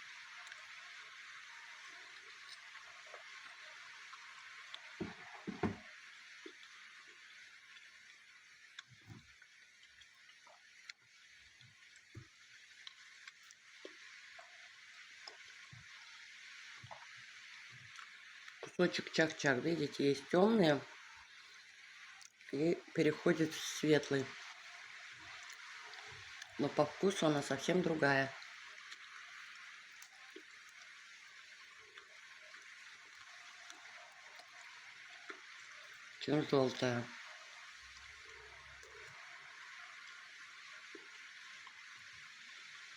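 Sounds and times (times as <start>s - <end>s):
rain hissing: 0.0s - 9.4s
rain falling: 0.0s - 21.6s, 22.4s - 42.9s.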